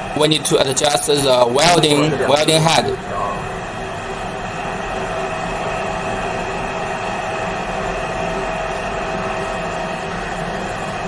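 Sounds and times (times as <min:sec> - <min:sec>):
hydraulic machine humming: 0:01.5 - 0:05.1.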